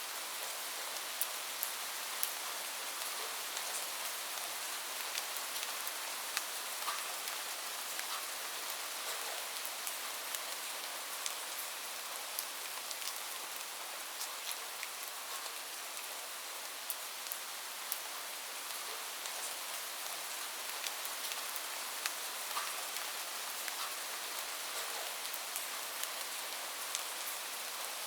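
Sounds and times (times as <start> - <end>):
steady rain: 0.0 - 28.0.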